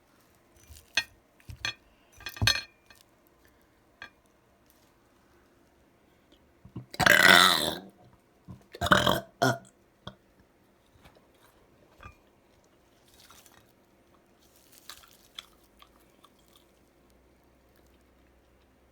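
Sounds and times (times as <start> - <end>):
person belching: 6.8 - 8.0, 8.8 - 9.7.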